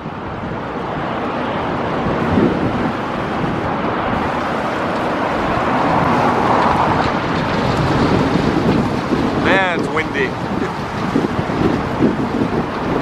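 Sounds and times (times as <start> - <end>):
strong wind buffeting microphone: 0.0 - 13.0.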